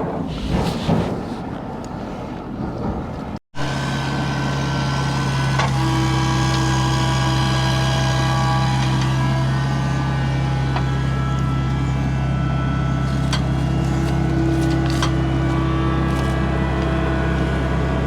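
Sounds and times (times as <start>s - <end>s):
diesel engine droning: 3.6s - 18.0s.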